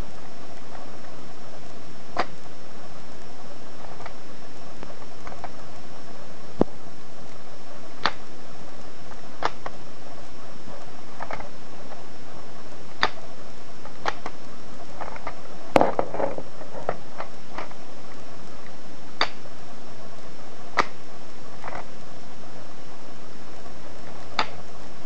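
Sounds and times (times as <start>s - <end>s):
steady hiss: 0.0s - 25.0s
plastic bricks clicking and rattling: 15.0s - 17.7s.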